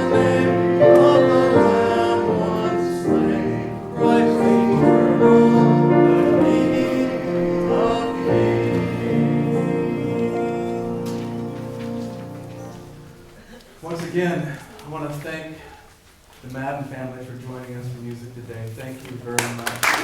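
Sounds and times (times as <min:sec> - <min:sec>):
hymn singing with accompaniment: 0:00.0 - 0:15.8.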